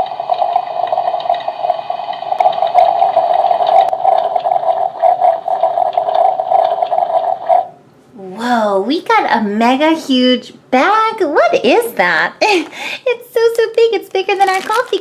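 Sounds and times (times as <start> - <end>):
water gurgling: 0.0 - 7.8
coffee maker pump hum: 0.0 - 7.9.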